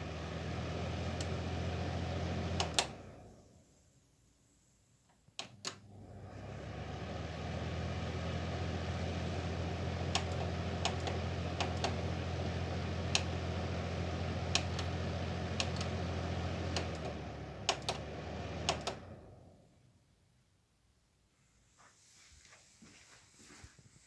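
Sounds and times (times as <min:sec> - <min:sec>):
dehumidifier fan rushing: 0:00.0 - 0:03.8, 0:05.4 - 0:19.9
dehumidifier humming: 0:00.0 - 0:04.3, 0:05.2 - 0:20.1
sharp clicks: 0:10.1 - 0:12.0, 0:14.5 - 0:14.9, 0:16.7 - 0:18.0, 0:18.6 - 0:19.0.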